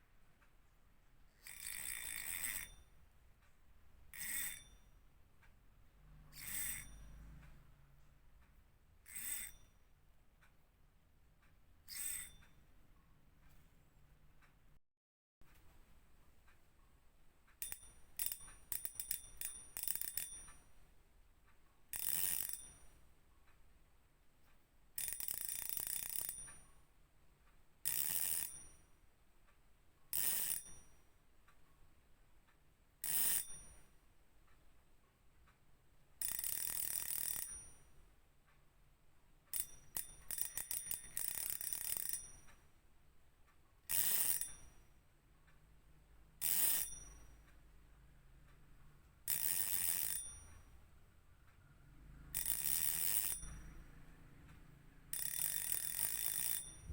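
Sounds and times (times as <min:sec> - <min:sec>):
fishing reel drag clicking: 0:01.4 - 0:02.8, 0:04.2 - 0:04.6, 0:06.4 - 0:07.1, 0:17.6 - 0:20.5, 0:22.0 - 0:22.8, 0:25.0 - 0:26.6, 0:27.9 - 0:28.6, 0:30.2 - 0:30.7, 0:33.0 - 0:33.6, 0:36.2 - 0:37.7, 0:39.5 - 0:42.3, 0:43.9 - 0:44.6, 0:46.4 - 0:47.0, 0:49.3 - 0:50.3, 0:52.4 - 0:53.7, 0:55.2 - 0:56.9
fishing reel drag buzzing: 0:06.4 - 0:07.0, 0:22.0 - 0:22.6, 0:33.1 - 0:33.5, 0:36.2 - 0:37.4, 0:46.4 - 0:46.9, 0:49.3 - 0:50.2, 0:52.4 - 0:53.6, 0:55.2 - 0:56.9.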